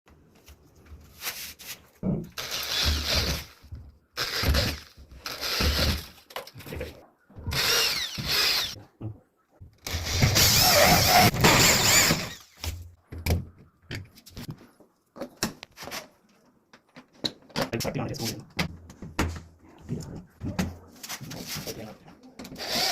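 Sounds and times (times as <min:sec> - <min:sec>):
power tool running: 0:02.4 - 0:03.6, 0:07.5 - 0:08.8, 0:09.9 - 0:12.4, 0:22.6 - 0:22.9.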